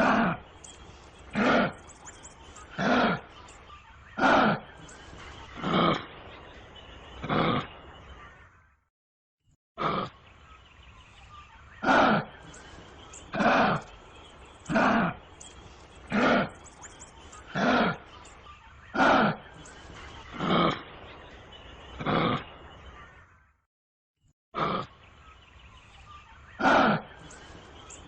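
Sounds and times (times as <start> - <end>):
kangaroo harsh calls: 0.0 - 0.6, 1.2 - 1.9, 2.6 - 3.3, 4.2 - 4.8, 11.8 - 14.0, 14.7 - 15.3, 16.0 - 16.6, 17.4 - 18.1, 18.9 - 19.6, 26.6 - 27.4.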